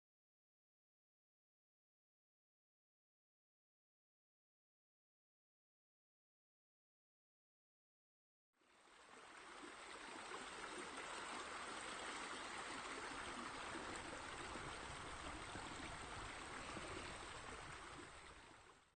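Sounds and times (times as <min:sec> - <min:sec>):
running water rushing: 0:08.6 - 0:19.0.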